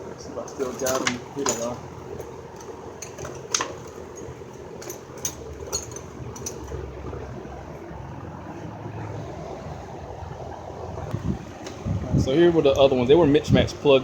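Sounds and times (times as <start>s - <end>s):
steady low hum: 0.0s - 14.0s
metal spark plugs clinking: 0.4s - 6.9s.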